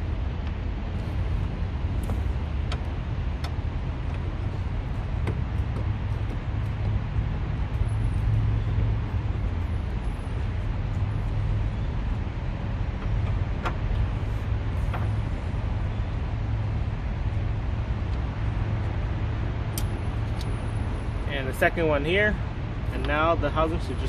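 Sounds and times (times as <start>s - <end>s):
highway traffic rumble: 0.0s - 24.0s.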